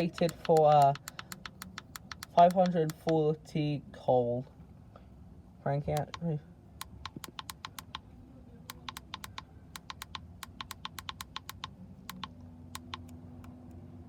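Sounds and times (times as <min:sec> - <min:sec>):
keypad button clicks: 0:00.0 - 0:03.2, 0:05.9 - 0:08.0, 0:08.7 - 0:13.2.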